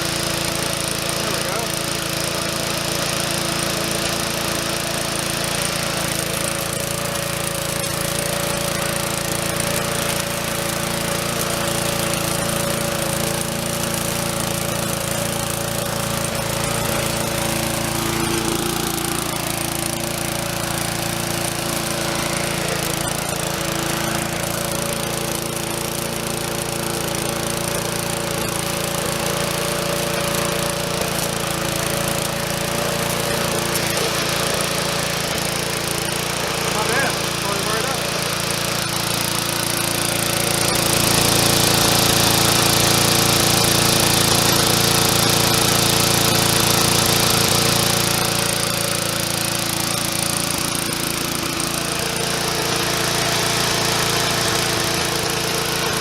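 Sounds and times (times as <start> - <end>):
push mower engine running: 0.0 - 56.0.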